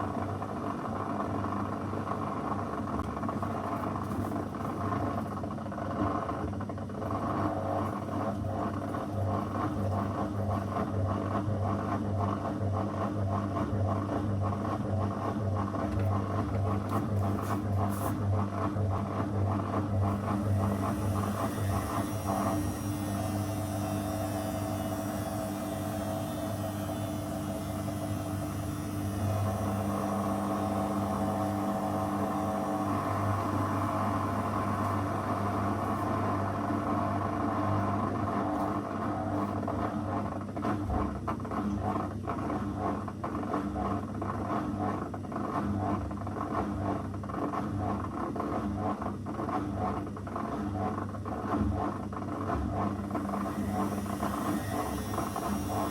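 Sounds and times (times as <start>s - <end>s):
washing machine motor humming: 0.0s - 55.9s
high whine: 20.1s - 39.6s.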